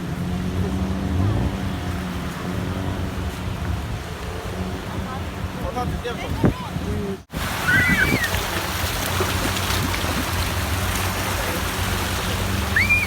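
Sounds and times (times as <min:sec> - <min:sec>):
rushing sea water: 0:00.0 - 0:13.0.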